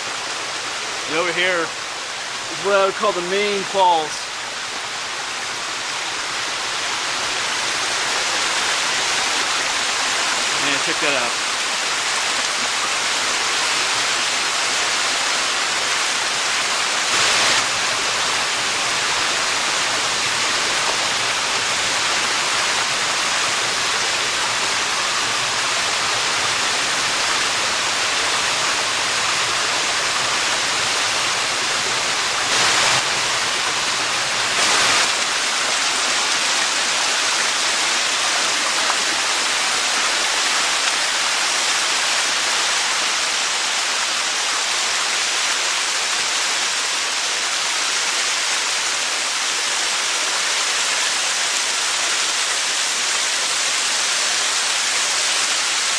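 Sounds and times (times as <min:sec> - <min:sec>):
waterfall rushing: 0:00.0 - 0:55.9.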